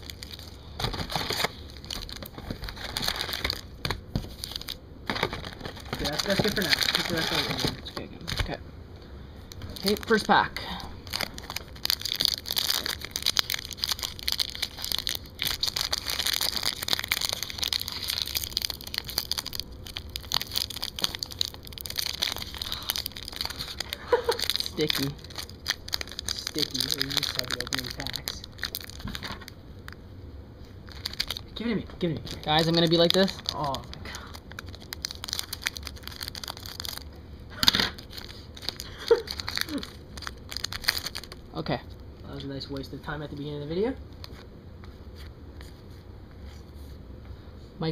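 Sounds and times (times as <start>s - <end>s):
card pack wrapper crinkling: 0.0s - 8.6s, 9.5s - 10.4s, 11.0s - 30.0s, 30.8s - 41.5s.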